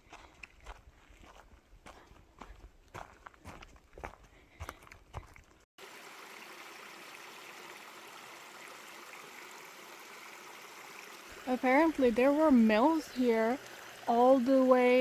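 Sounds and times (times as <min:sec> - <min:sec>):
footsteps on forest path: 0:00.0 - 0:05.7
small stream rushing: 0:05.8 - 0:15.0.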